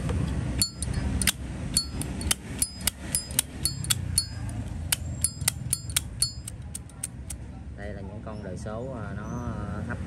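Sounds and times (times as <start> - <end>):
metal lighter clicks and clinks: 0.6 - 7.4.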